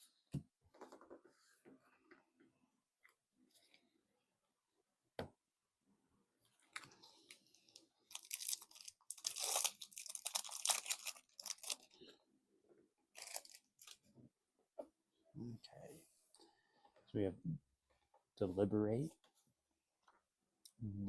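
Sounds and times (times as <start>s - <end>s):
foil wrapper tearing and crinkling: 8.1s - 11.9s, 13.2s - 14.0s.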